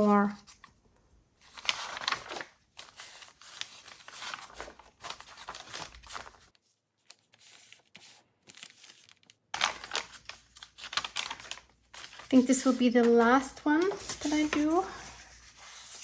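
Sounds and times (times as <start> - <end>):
paper rustling and tearing: 1.4 - 16.0.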